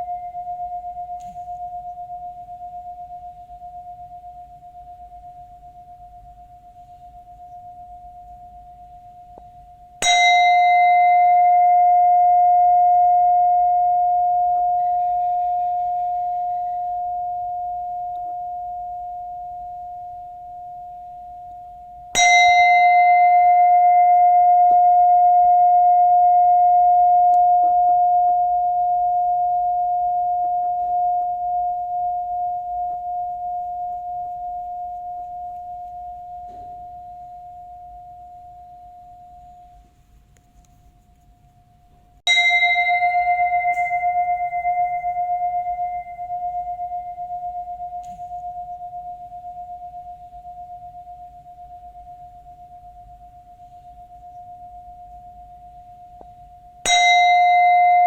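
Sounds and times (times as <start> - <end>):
bell ringing clear tone: 42.3 - 48.8, 56.8 - 58.0.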